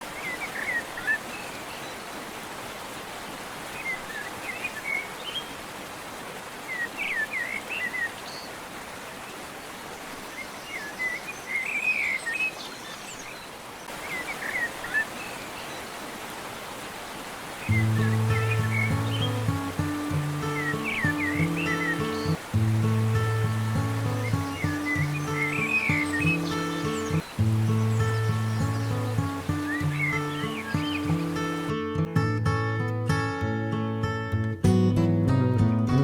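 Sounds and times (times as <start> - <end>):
songbird chirping: 0.0 - 2.2, 3.6 - 5.6, 6.6 - 8.6, 9.2 - 16.2, 17.5 - 31.7
steady outdoor hiss: 0.0 - 31.8.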